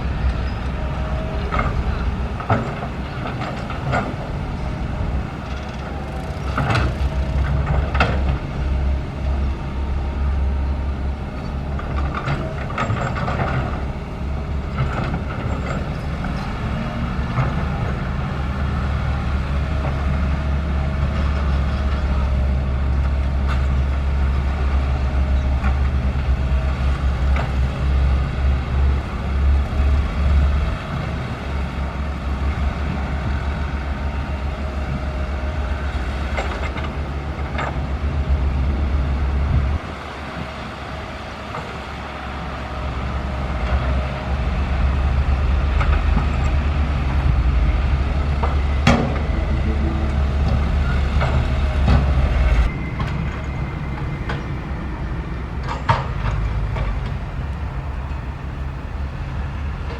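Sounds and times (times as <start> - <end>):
excavator diesel engine: 0.0 - 59.9
faint hydraulic whine: 41.4 - 59.9.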